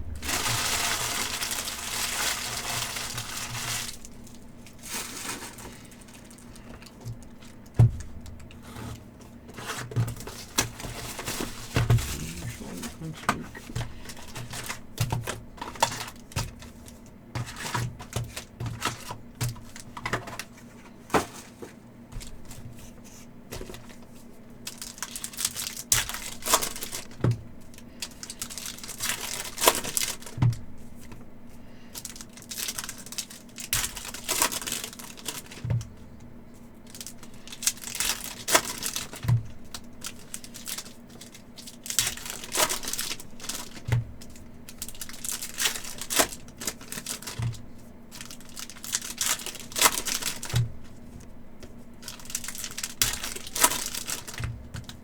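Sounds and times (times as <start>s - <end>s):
foil wrappers tearing and crinkling: 0.0s - 7.8s, 24.6s - 30.6s, 32.0s - 35.8s, 36.8s - 51.1s, 52.0s - 55.0s.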